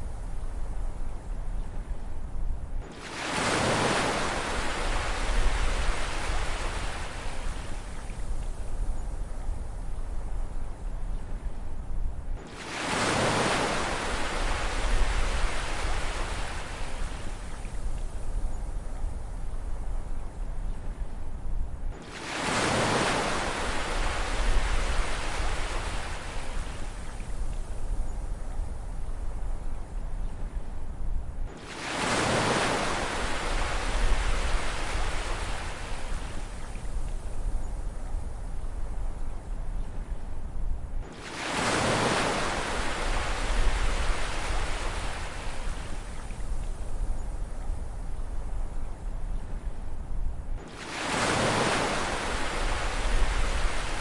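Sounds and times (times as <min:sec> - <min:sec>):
low rumble of surf: 0:00.0 - 0:54.0
ocean wave breaking: 0:50.6 - 0:54.0.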